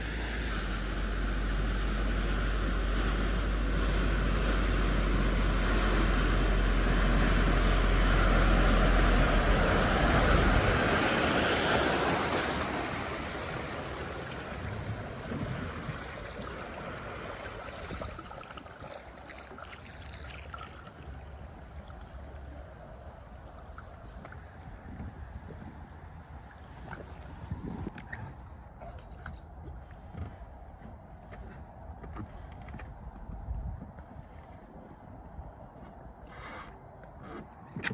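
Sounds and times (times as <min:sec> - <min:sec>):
car engine low rumble: 0:00.0 - 0:19.2
water splashing rush: 0:00.0 - 0:27.9.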